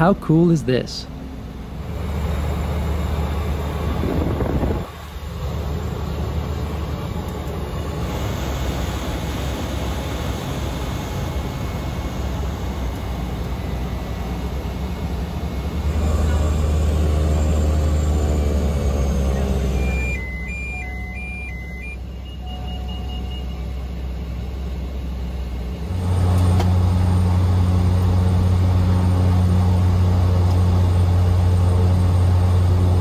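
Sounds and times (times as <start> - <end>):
turboprop engine drone: 0.0 - 33.0.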